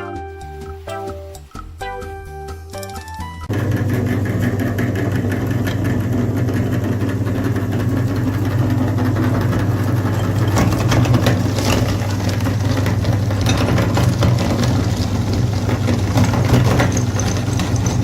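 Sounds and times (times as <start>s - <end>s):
electric grinder motor humming: 3.5s - 18.0s
crackling clicks of crushing: 7.4s - 18.0s.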